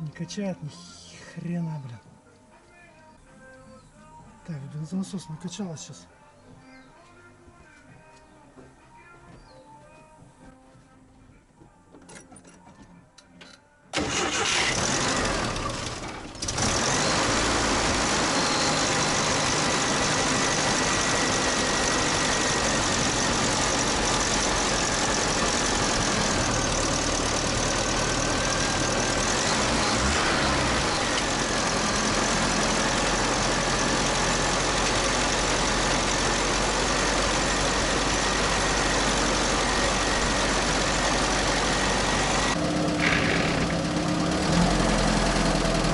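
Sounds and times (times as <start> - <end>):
petrol engine starting and running: 13.9 - 45.9.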